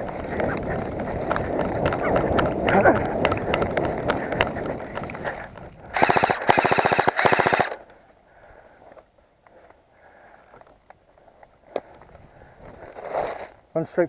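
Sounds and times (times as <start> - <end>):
scattered clicks: 0.0 - 8.0
rustling through undergrowth: 0.0 - 13.7
airsoft rifle rapid fire: 5.9 - 7.8.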